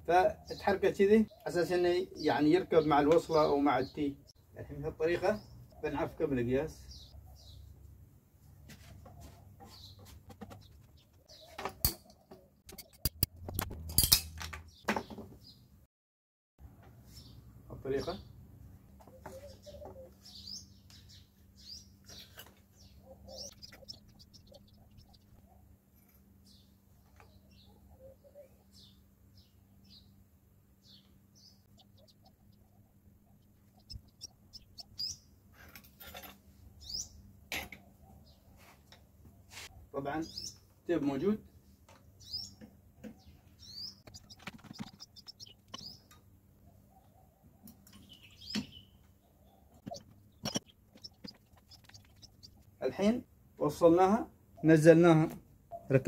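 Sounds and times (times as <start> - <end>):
birds chirping faintly: 0.0 - 13.2, 16.8 - 56.0
steady low hum: 27.8 - 35.6.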